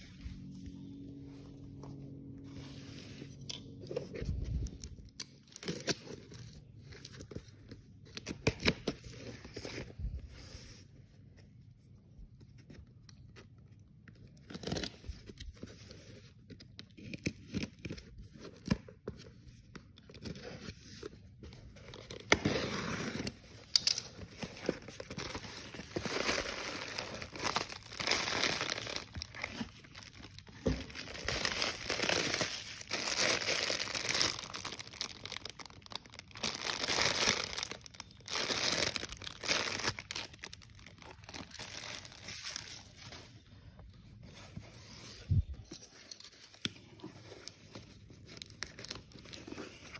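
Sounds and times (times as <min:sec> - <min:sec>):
packaging crinkling and tearing: 0:03.7 - 0:10.1, 0:21.8 - 0:43.4, 0:45.7 - 0:49.9.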